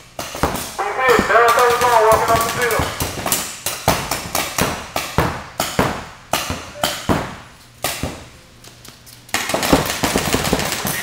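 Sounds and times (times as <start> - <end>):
paintball markers firing: 1.1 - 3.4, 9.3 - 11.0.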